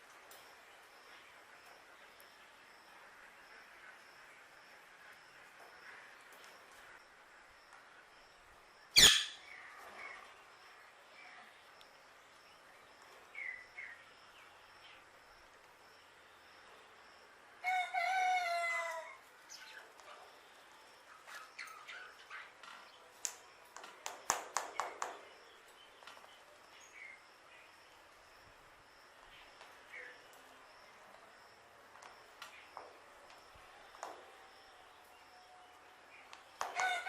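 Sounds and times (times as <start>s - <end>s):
bird chirps: 9.0s - 9.7s
bird crowing: 17.6s - 19.2s, 36.6s - 37.0s.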